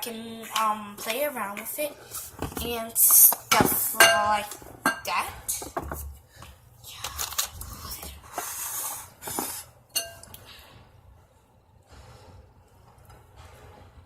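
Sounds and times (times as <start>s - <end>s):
dishware clinking: 3.5s - 5.2s, 9.9s - 10.3s.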